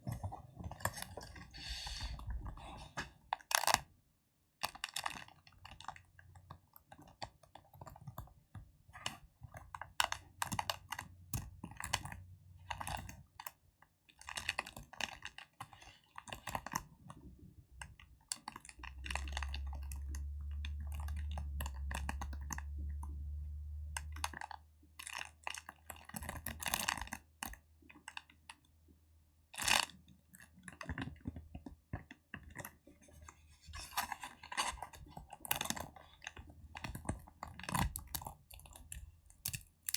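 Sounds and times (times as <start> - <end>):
low steady hum: 18.9 - 24.5.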